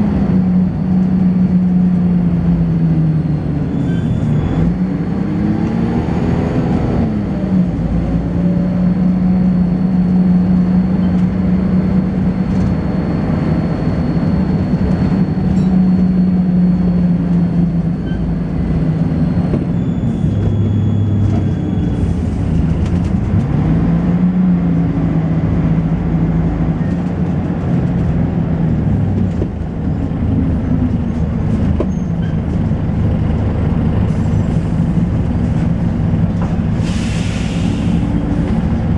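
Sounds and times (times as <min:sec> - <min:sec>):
bus engine running: 0:00.0 - 0:38.9.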